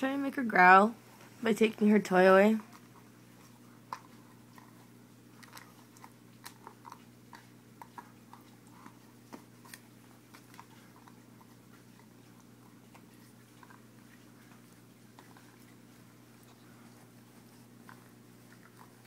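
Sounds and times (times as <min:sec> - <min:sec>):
faint steady hum: 0:00.0 - 0:19.0
dog chewing a toy: 0:02.6 - 0:19.0.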